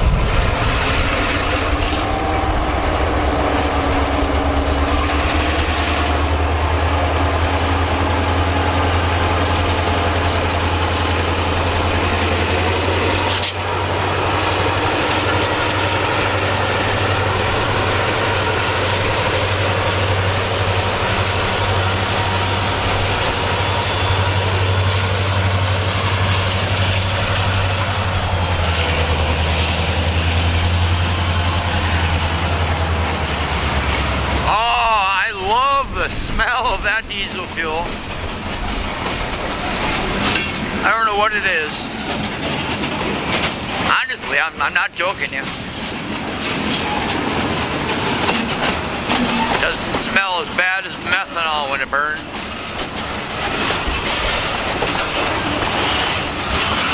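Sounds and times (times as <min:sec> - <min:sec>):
high-pitched whine: 0:00.0 - 0:06.5
diesel engine rumble: 0:00.0 - 0:56.9
moving train noise: 0:00.0 - 0:56.9.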